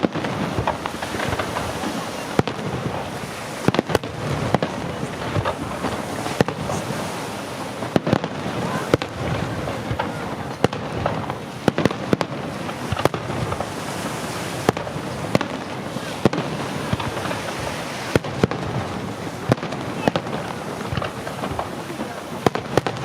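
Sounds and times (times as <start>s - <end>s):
fireworks bursting in bangs: 0.0s - 23.0s.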